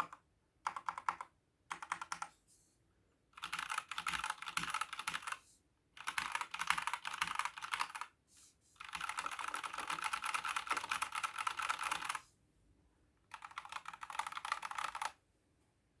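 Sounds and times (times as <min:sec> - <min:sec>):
fast typing on mechanical keyboard: 0:00.0 - 0:02.3, 0:03.4 - 0:05.4, 0:06.0 - 0:08.1, 0:08.8 - 0:12.2, 0:13.3 - 0:15.2.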